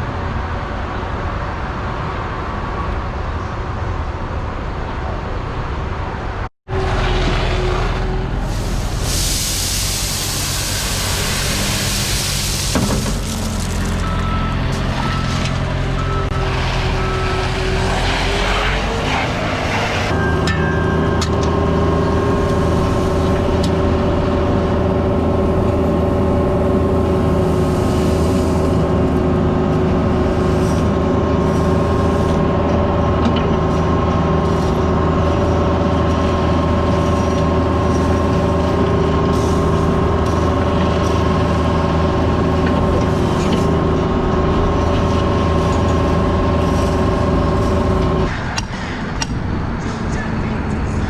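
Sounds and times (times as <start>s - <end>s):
diesel engine running steadily: 0.0s - 51.0s.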